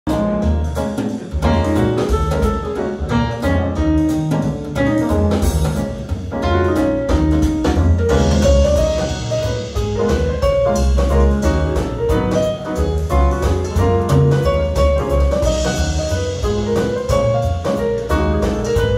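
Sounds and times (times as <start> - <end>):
jazz music with deep bass: 0.1 - 18.9.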